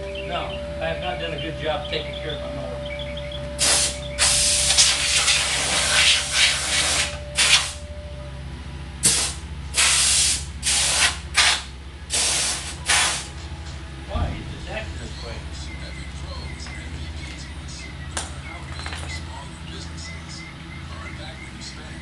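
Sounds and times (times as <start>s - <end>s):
steady low hum: 0.0s - 22.0s
air blow gun hissing: 3.6s - 7.8s, 9.0s - 13.3s.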